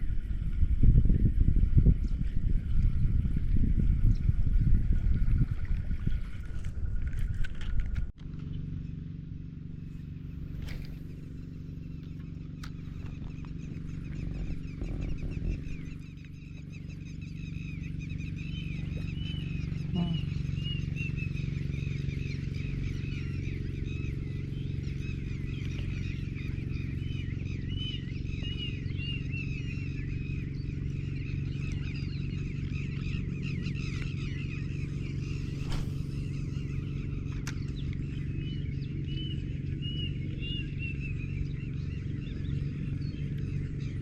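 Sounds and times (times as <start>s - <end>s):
steady low hum: 0.0s - 44.0s
animals chirping rapidly: 10.6s - 44.0s.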